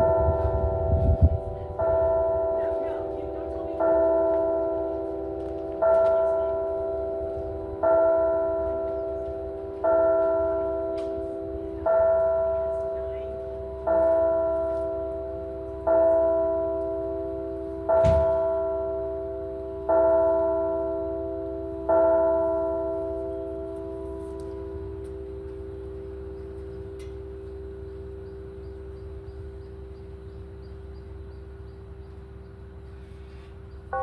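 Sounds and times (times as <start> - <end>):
church bell tolling: 0.0 - 34.0
short thump: 18.0 - 18.5.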